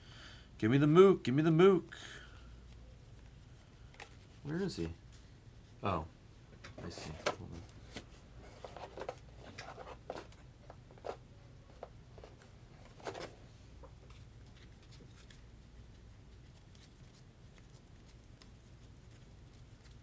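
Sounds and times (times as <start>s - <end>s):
low room hum: 0.0s - 20.0s
trading cards rustling and tapping: 3.2s - 5.3s, 6.6s - 20.0s.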